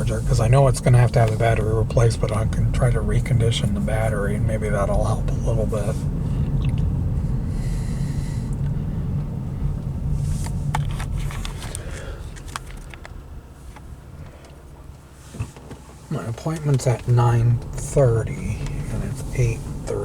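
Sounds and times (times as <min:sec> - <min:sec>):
road rumble inside car cabin: 0:00.0 - 0:20.0.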